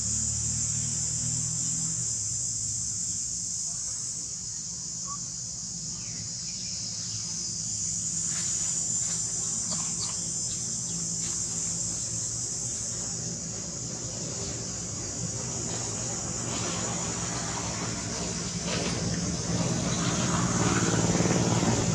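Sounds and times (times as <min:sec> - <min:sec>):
insects droning: 0:00.0 - 0:21.9.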